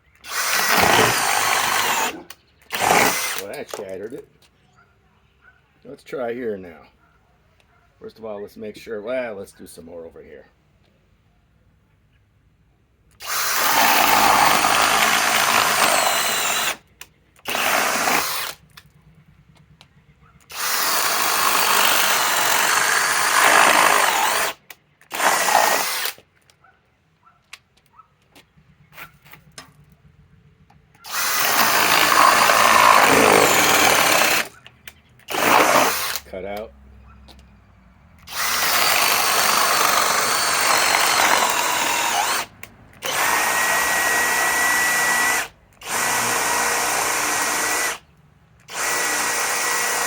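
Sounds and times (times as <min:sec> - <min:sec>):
cordless drill boring into wood: 0:00.1 - 0:03.9, 0:13.2 - 0:16.8, 0:17.4 - 0:18.6, 0:20.4 - 0:26.2, 0:31.0 - 0:34.6, 0:35.2 - 0:36.3, 0:38.3 - 0:50.0.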